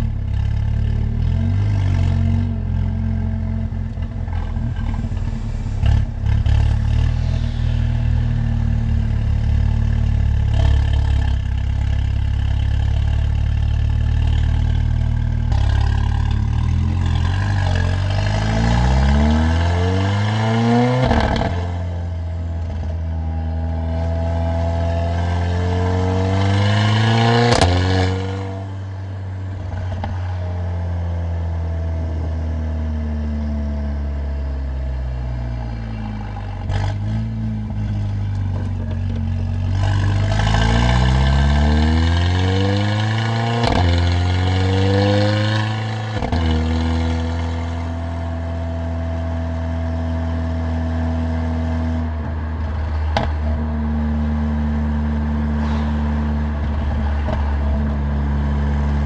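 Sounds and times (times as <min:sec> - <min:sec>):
exhaust crack: 0:00.0 - 0:18.9, 0:26.4 - 0:30.8, 0:51.6 - 0:59.0
car engine revving: 0:00.0 - 0:30.5.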